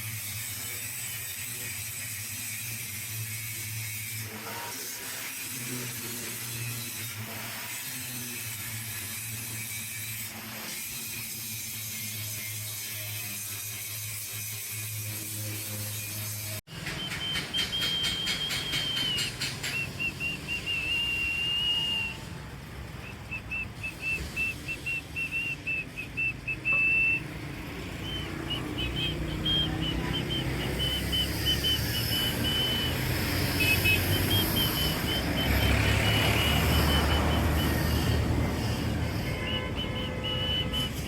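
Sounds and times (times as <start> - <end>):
high-pitched machine whine: 23.5 - 41.0.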